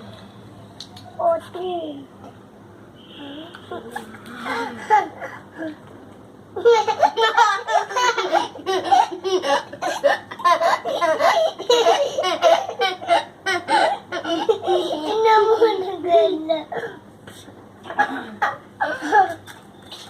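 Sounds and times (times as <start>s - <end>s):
young children laughing: 3.8s - 5.8s, 6.5s - 16.8s, 18.8s - 19.5s.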